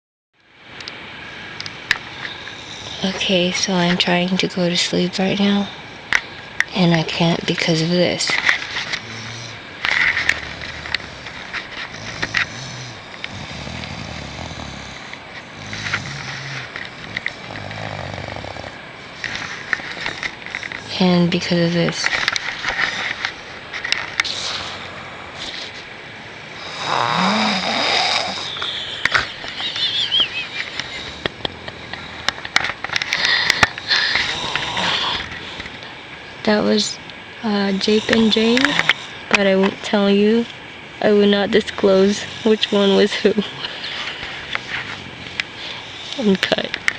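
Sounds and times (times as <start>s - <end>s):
person snoring: 9.0s - 20.1s, 26.5s - 29.4s, 30.9s - 32.3s, 33.2s - 35.6s.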